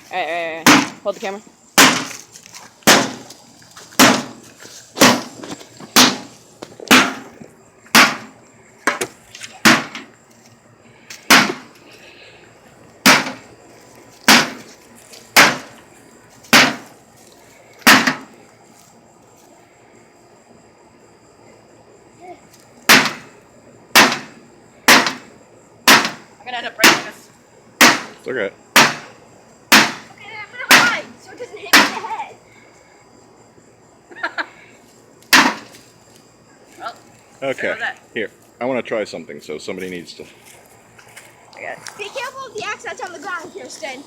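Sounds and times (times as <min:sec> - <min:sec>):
hand tool striking microwave oven: 0:07.9 - 0:08.3, 0:13.0 - 0:13.4, 0:17.9 - 0:18.3, 0:22.9 - 0:23.3, 0:23.9 - 0:25.2, 0:25.9 - 0:26.2, 0:27.8 - 0:28.2, 0:28.8 - 0:29.1, 0:29.7 - 0:30.1.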